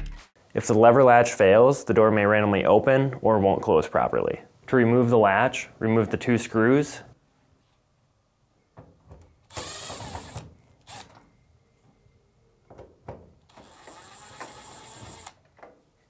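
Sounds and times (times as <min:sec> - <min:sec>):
power screwdriver motor whining: 0:13.5 - 0:15.4.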